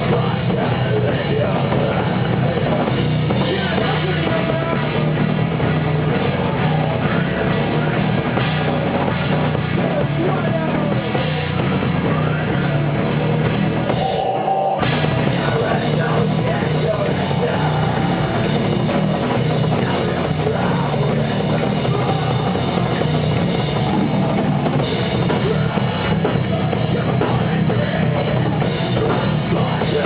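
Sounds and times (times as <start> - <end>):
person singing: 0.0 - 9.0, 13.9 - 18.5
rock band playing loudly: 0.0 - 30.0.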